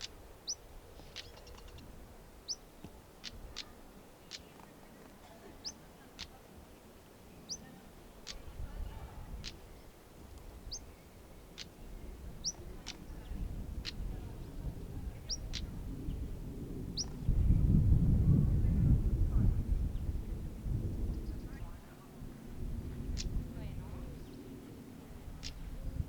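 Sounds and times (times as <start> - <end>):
bird ticking notes: 2.4 - 4.6.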